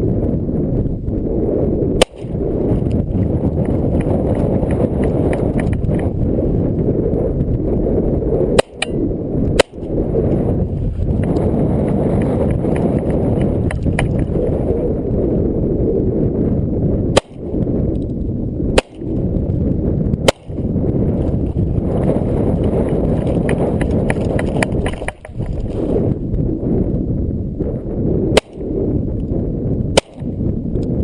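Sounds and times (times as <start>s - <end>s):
low rumble of microphone noise: 0.0s - 31.0s
pistol shots: 2.0s - 2.3s, 9.6s - 9.8s, 17.2s - 17.4s, 18.8s - 19.1s, 20.3s - 20.6s, 30.0s - 30.3s.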